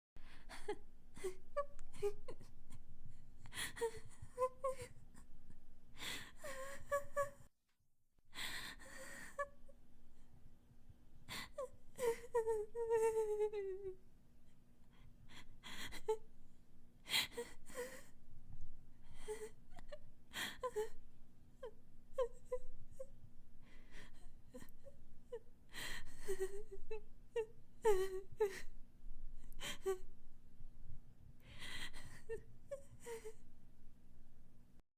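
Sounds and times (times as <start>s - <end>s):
person crying and sobbing: 0.2s - 7.5s, 8.4s - 9.8s, 11.3s - 14.0s, 15.3s - 16.3s, 17.1s - 18.2s, 19.0s - 21.0s, 21.6s - 28.8s, 29.4s - 30.1s, 31.4s - 33.4s.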